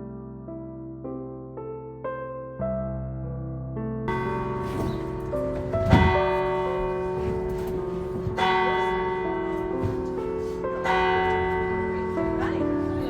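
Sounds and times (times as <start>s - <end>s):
church bells ringing: 4.1s - 13.0s.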